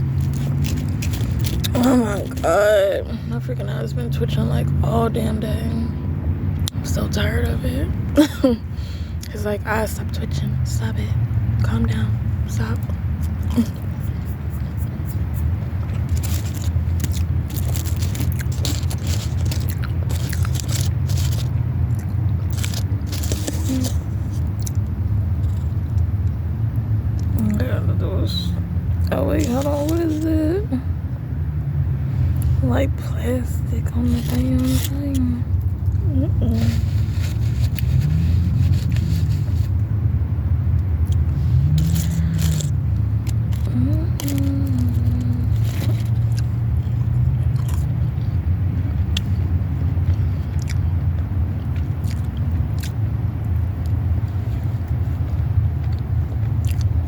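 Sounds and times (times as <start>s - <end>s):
crunchy chewing: 0.0s - 2.5s, 12.7s - 26.4s, 33.9s - 39.9s, 40.8s - 57.0s
plastic packaging crinkling: 0.0s - 2.5s, 16.0s - 21.6s, 22.5s - 24.5s, 34.1s - 35.1s, 41.7s - 46.4s
motor vehicle rumbling: 0.0s - 57.0s.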